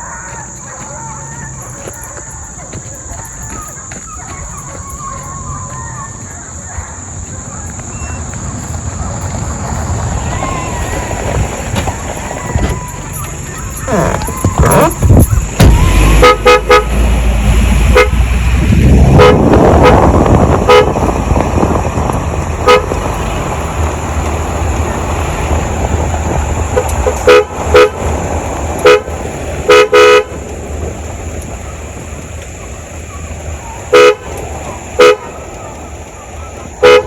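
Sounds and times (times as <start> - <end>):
engine rumbling: 0.0 - 37.0
vehicle horn short beeps: 33.9 - 34.3.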